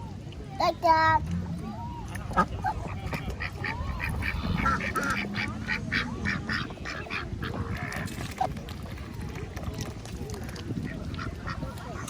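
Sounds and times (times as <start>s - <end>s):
ducks quacking: 2.2s - 8.6s, 10.7s - 12.0s.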